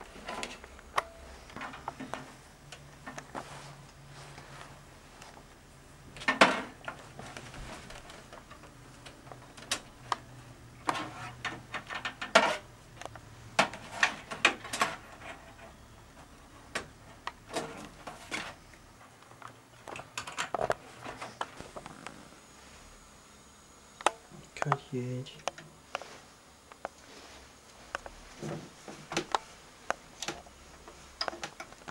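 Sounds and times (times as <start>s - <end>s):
clicks and knocks of computer hardware: 6.2s - 10.2s, 10.8s - 15.7s, 19.2s - 21.9s, 27.9s - 30.5s, 31.2s - 31.9s.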